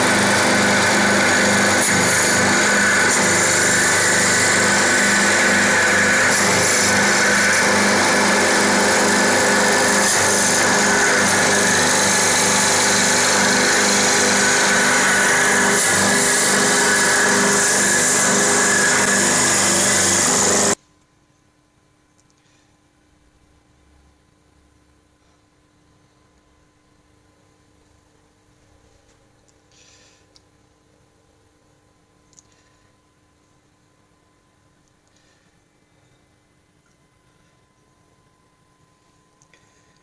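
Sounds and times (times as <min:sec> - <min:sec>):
wood lathe machine whine: 0:00.0 - 0:20.8.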